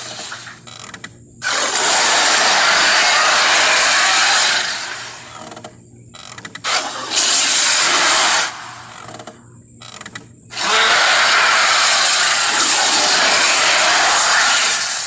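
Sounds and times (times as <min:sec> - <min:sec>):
creature roaring: 0:01.4 - 0:05.0, 0:10.5 - 0:15.0.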